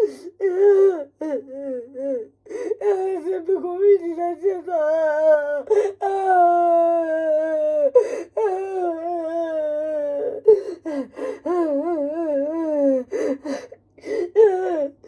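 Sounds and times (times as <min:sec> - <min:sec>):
woman wailing and sobbing: 0:00.0 - 0:15.0.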